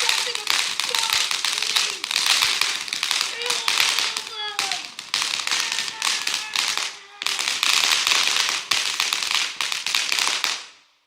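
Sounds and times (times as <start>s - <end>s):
firework hissing and crackling: 0.0s - 10.9s.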